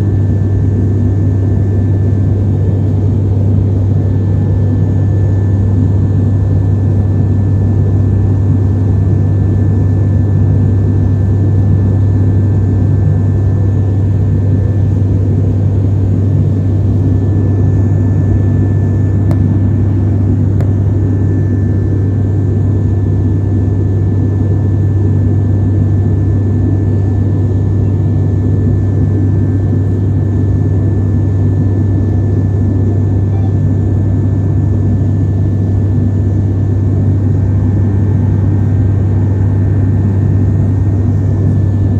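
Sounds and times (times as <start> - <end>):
airliner cabin drone: 0.0 - 41.9
faint high whine: 33.1 - 33.6.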